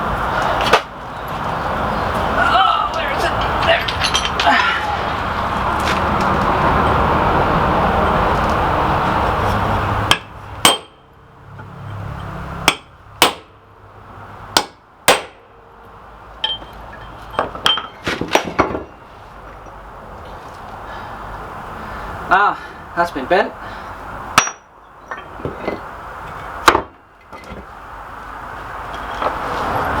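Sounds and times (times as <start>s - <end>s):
steady rushing noise: 0.0s - 10.6s
hammer striking steel vise: 10.1s - 11.0s.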